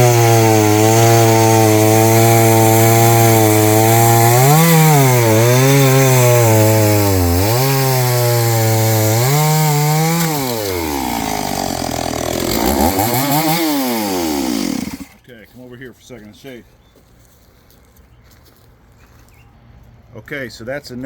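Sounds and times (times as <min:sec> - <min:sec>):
chainsaw cutting wood: 0:00.0 - 0:15.2.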